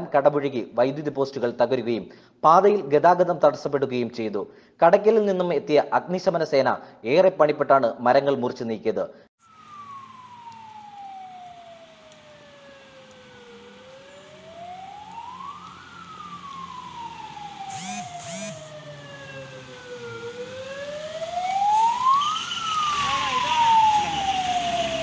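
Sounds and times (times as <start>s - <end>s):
siren wailing: 9.4s - 25.0s.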